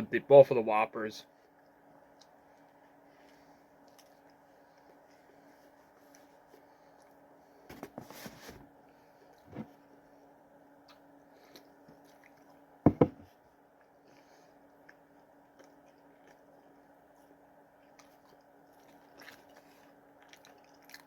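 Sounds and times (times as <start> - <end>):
steady low hum: 0.0 - 21.0
chewing and biting: 1.4 - 7.2, 10.8 - 12.6, 13.8 - 21.0
sharp knocks: 12.9 - 13.2.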